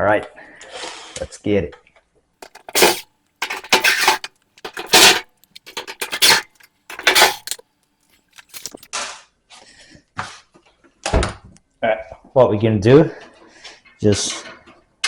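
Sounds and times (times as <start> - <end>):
sheet metal clanking and rattling: 2.4 - 7.6, 8.4 - 8.8.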